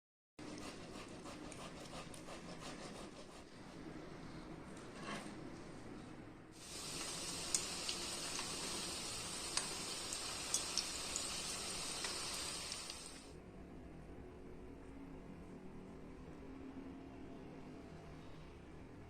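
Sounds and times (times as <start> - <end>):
food sizzling in hot oil: 6.6 - 13.3
oil popping and crackling: 6.7 - 13.1.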